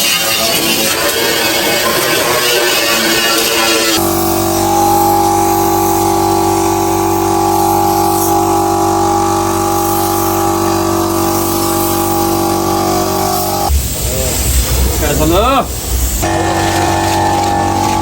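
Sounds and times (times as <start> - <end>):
motor humming with whine: 3.7 - 13.8, 15.8 - 18.0.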